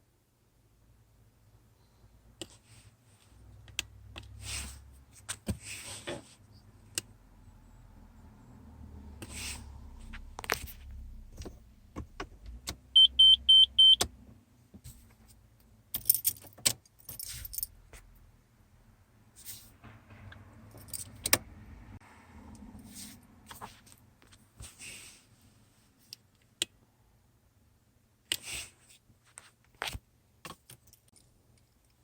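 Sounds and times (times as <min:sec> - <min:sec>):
keys jangling: 0:15.9 - 0:17.7, 0:20.7 - 0:21.4.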